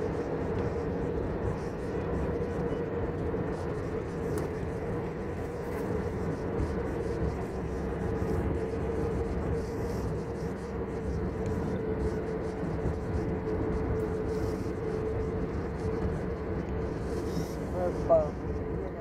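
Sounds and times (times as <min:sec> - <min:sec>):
engine drone: 0:00.0 - 0:19.0.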